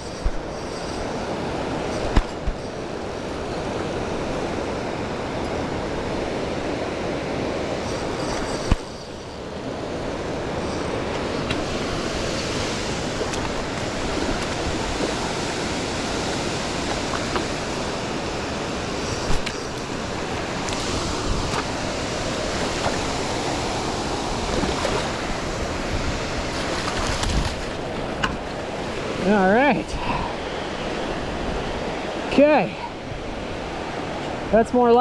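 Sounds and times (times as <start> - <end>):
waterfall rushing: 9.6 - 30.9.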